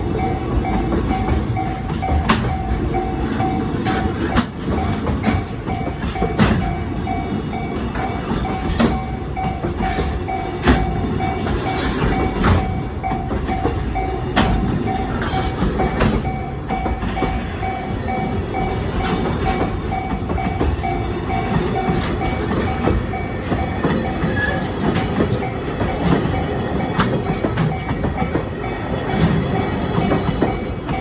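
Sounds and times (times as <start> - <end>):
crossing warning bell ringing: 0.0 - 31.0
freight train rumbling: 0.0 - 31.0
wheels clacking over rail joints: 0.0 - 31.0.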